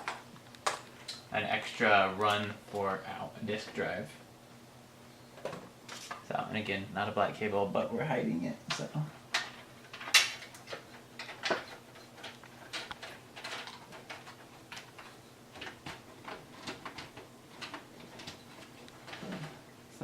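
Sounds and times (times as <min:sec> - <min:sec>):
computer parts clicking and scraping: 0:09.4 - 0:19.6.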